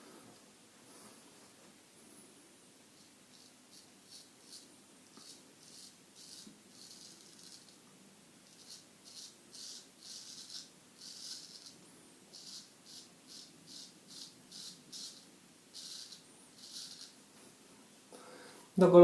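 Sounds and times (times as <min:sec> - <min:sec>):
razor scraping through stubble: 0:03.0 - 0:07.8, 0:08.5 - 0:17.2.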